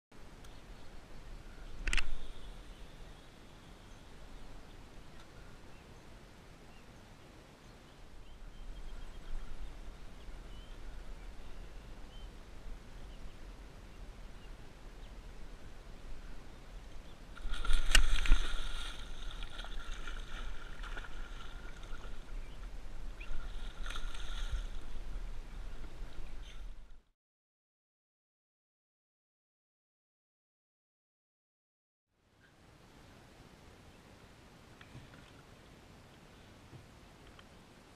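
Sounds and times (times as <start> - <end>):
water around a kayak: 0.2 - 27.1, 32.2 - 37.9
wind rumble on microphone: 7.9 - 27.1.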